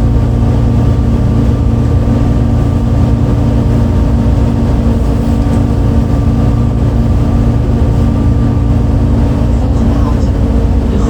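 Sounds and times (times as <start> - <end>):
bus diesel engine running: 0.0 - 11.0.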